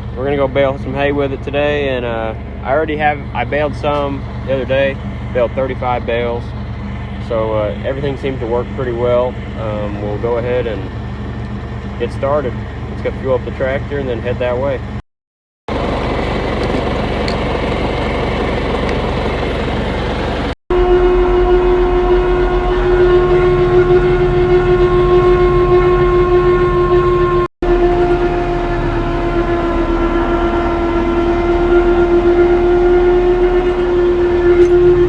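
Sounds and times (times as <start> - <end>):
baler whine: 0.0 - 15.0, 15.7 - 35.0
tractor engine rumble: 0.0 - 15.0, 15.7 - 20.6.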